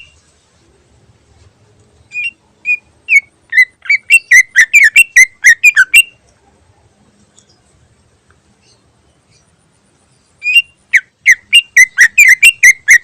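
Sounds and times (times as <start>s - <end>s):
bird whistling loud notes: 2.1s - 6.2s, 10.4s - 13.0s.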